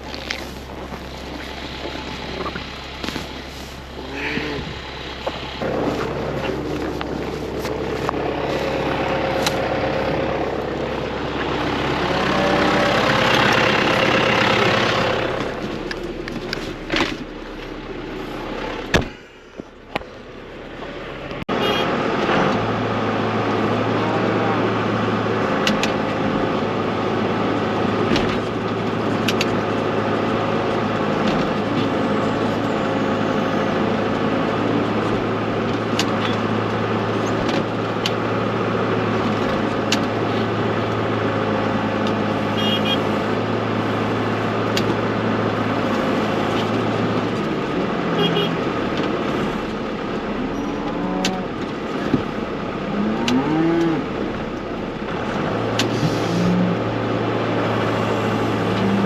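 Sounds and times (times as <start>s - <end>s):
tractor engine running: 0.0s - 59.0s
cows mooing: 4.0s - 4.8s, 11.4s - 15.6s, 23.6s - 25.2s, 50.4s - 51.7s, 52.9s - 54.2s, 57.7s - 59.0s.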